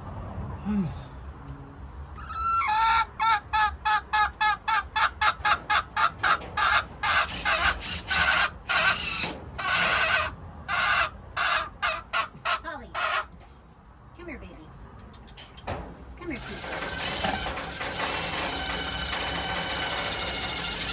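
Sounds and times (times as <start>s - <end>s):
hen cackling and squawking: 2.2s - 13.4s.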